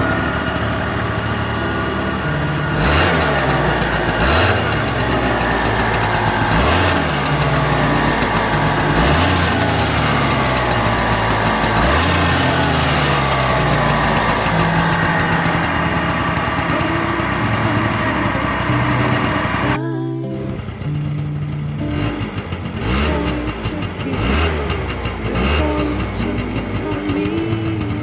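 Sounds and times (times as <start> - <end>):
scooter engine idling: 0.0 - 28.0
throttle blips: 0.0 - 28.0.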